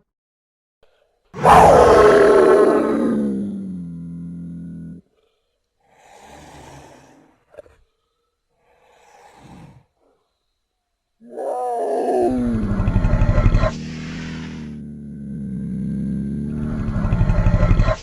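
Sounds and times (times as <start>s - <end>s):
creature roar with low growl: 1.4s - 5.0s, 11.2s - 18.0s
breathy snorts: 5.1s - 10.3s, 12.3s - 18.0s.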